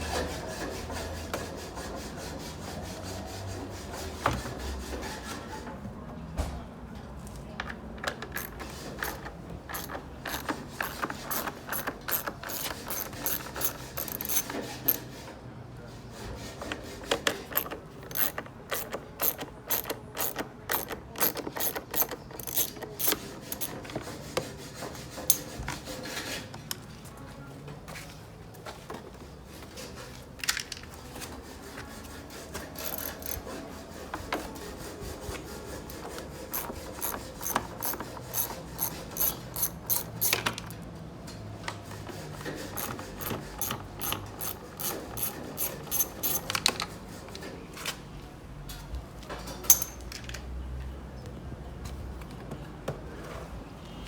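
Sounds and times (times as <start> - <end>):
hand ratchet clicking: 8.3 - 15.0, 17.5 - 23.8, 32.8 - 33.5, 36.5 - 40.7, 42.8 - 46.6, 49.7 - 50.0.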